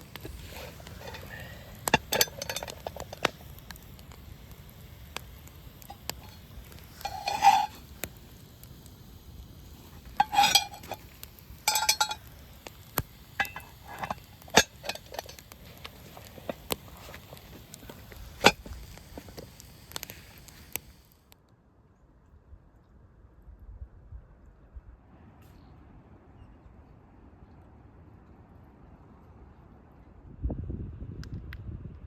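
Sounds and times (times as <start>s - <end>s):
metal cookware clinking and scraping: 0.2s - 3.5s, 5.8s - 7.9s, 10.0s - 12.3s, 13.4s - 17.4s, 18.4s - 18.7s.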